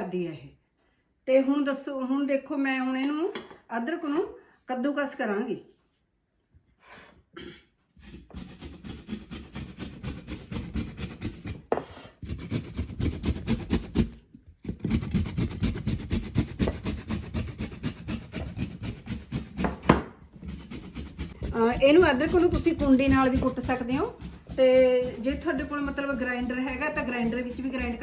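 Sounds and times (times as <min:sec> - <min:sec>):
ginger grated on a grater: 0:08.0 - 0:28.0.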